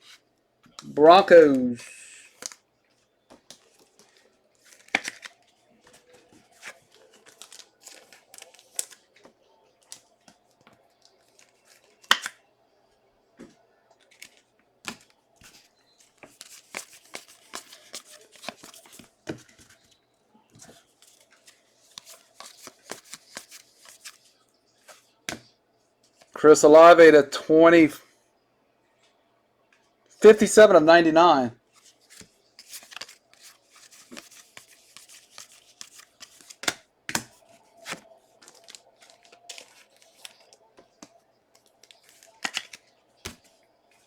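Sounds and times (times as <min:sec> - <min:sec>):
wrapper crinkling: 0:04.6 - 0:09.1.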